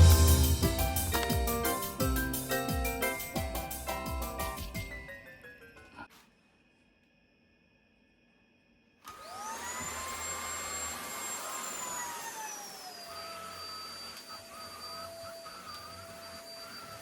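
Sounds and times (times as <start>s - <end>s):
vacuum cleaner motor whine: 9.0s - 17.0s.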